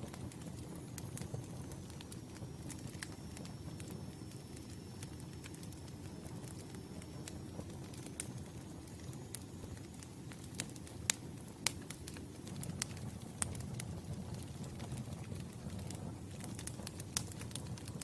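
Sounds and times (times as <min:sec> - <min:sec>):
campfire crackling and popping: 0:00.0 - 0:18.0.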